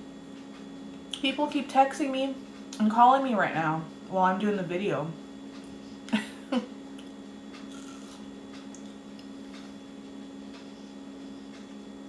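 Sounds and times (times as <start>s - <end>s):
fruit being eaten: 7.0s - 9.3s.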